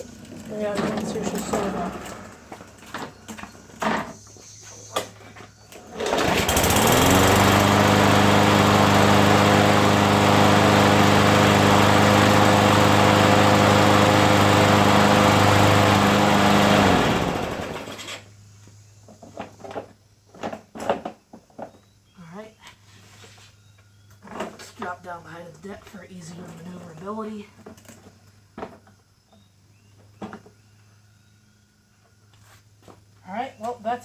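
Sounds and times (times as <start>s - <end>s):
lawn mower engine running: 0.0s - 4.1s, 5.7s - 18.3s.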